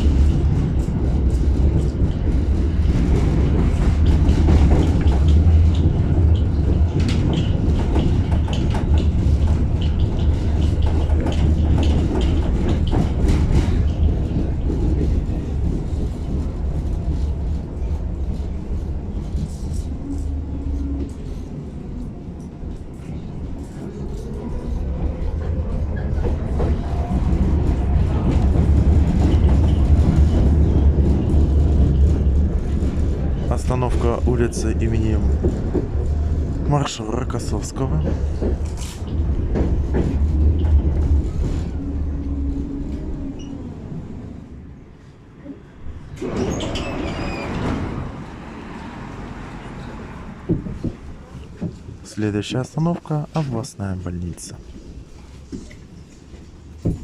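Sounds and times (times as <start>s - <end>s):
tram rumbling on track: 0.0s - 57.0s
wheels clicking over rail joints: 0.1s - 21.4s.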